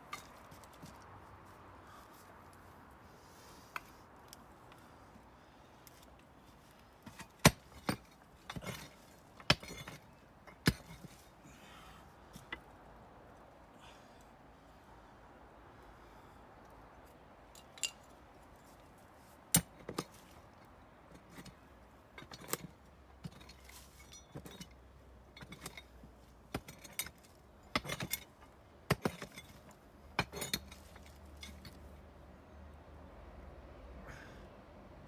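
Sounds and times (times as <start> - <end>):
metal tool chopping into soil: 7.1 - 11.2, 19.5 - 20.2, 26.5 - 28.3, 28.9 - 29.6, 30.2 - 31.7.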